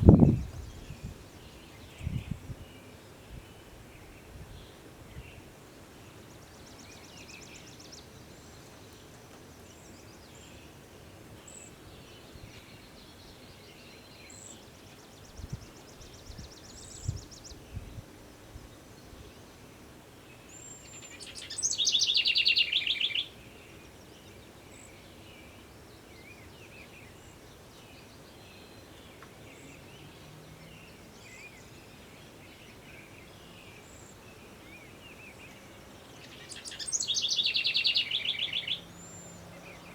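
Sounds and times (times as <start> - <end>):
faint background hiss: 0.0 - 39.9
birds calling and singing: 20.4 - 39.9.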